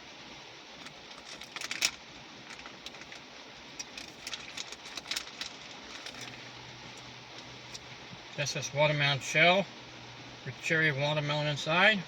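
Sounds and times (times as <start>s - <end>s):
steady hiss: 0.0s - 12.0s
sharp clicks and crackles: 0.8s - 6.4s.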